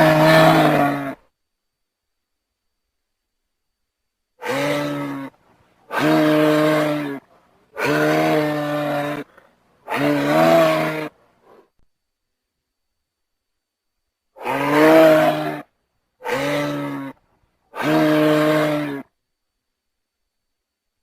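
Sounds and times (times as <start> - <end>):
moose calling: 4.4 - 7.2, 7.8 - 11.2.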